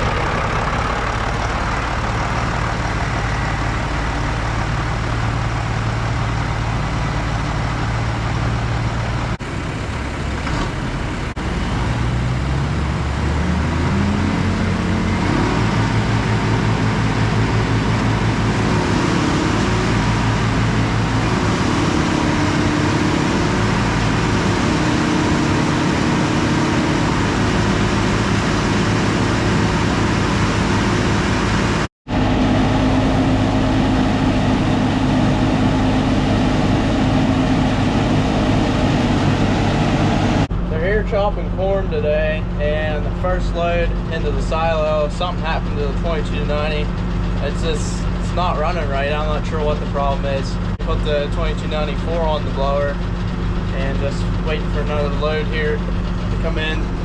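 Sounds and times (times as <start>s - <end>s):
diesel farm machinery running: 0.0s - 57.0s.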